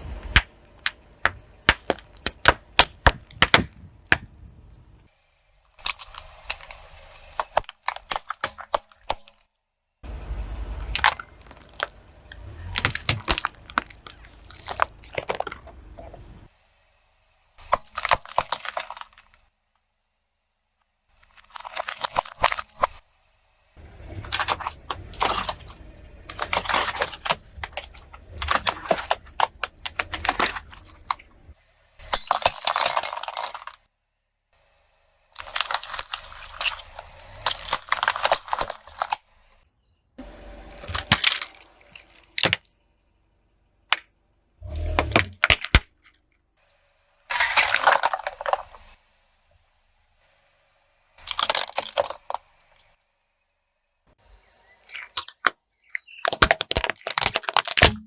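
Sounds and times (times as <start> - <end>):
objects crushed under car tyres: 10.8 - 16.0, 17.6 - 19.5, 21.2 - 23.1, 23.8 - 33.9, 35.4 - 39.6, 40.7 - 42.8, 47.3 - 49.0, 51.2 - 53.0, 56.2 - 58.0.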